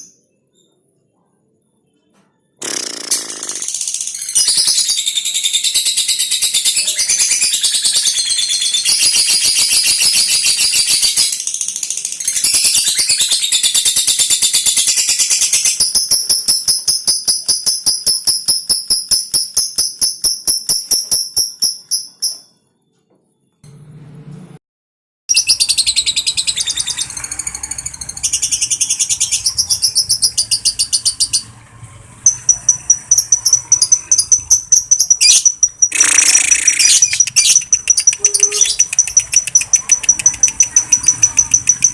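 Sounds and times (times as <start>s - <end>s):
bird chattering trill: 2.6s - 11.4s, 32.3s - 41.9s.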